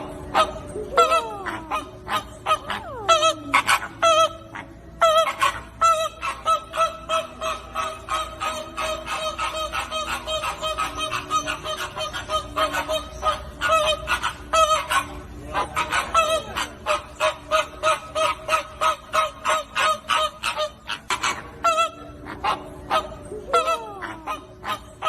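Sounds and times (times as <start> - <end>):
flamingos honking: 0.0 - 25.0.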